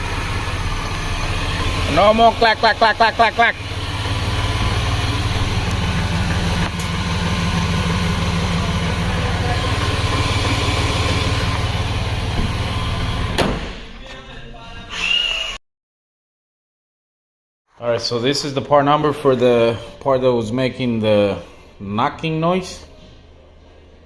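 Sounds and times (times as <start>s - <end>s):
van engine idling: 0.0s - 13.4s
sharp thump: 12.3s - 13.9s.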